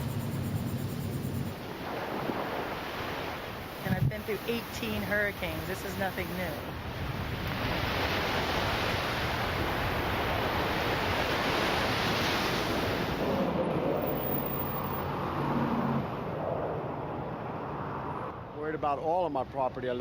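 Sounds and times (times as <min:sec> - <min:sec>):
steady rushing noise: 0:00.0 - 0:06.6.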